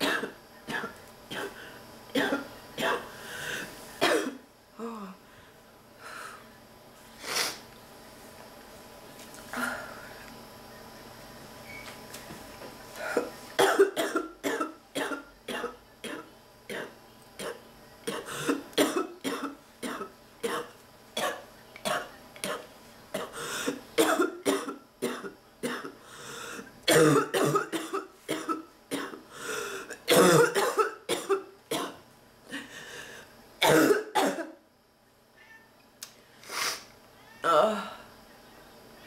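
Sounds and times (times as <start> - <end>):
person coughing: 0.0 - 1.6, 2.2 - 3.1, 4.0 - 5.1, 13.0 - 22.6, 23.2 - 26.0, 26.9 - 29.2, 29.9 - 32.0, 33.6 - 34.6.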